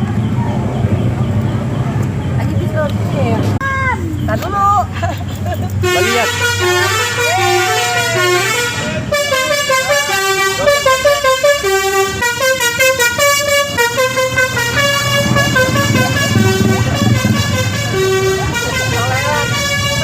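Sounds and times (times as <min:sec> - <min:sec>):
musical air horn tune: 0:05.8 - 0:20.0.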